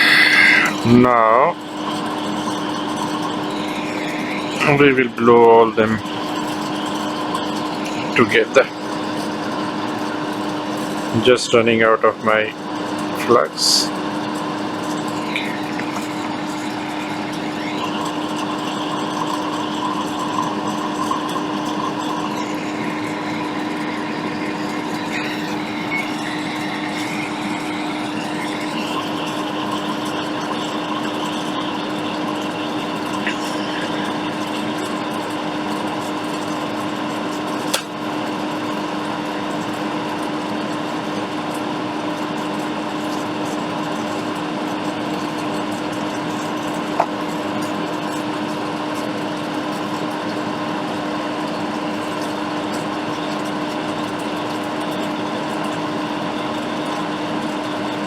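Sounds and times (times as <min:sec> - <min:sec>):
hot air blower fan rushing: 0:00.0 - 0:42.1.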